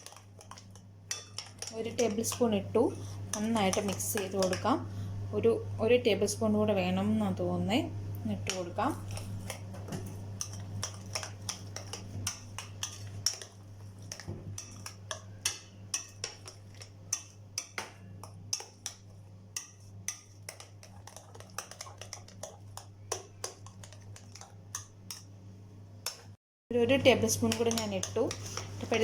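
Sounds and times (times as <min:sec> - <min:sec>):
metal spoon scraping a bowl: 0:00.0 - 0:02.4, 0:10.4 - 0:17.7
steady low hum: 0:00.0 - 0:29.0.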